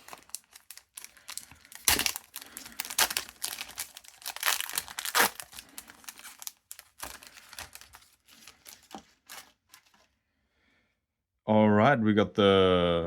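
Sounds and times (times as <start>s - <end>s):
foil wrapper crinkling and tearing: 0.0s - 10.0s.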